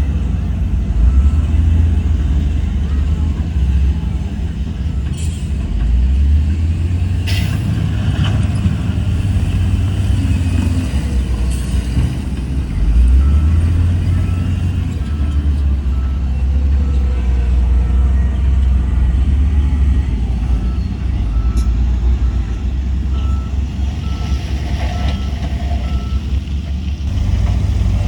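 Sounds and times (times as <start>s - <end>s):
diesel machine rumbling: 0.0s - 28.0s
reversing alarm beeping: 12.8s - 26.3s.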